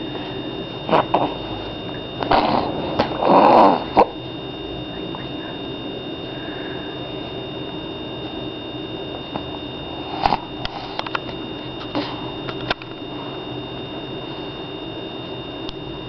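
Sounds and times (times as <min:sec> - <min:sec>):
background hum with high whine: 0:00.0 - 0:16.0
baby snoring snorts: 0:02.2 - 0:04.1.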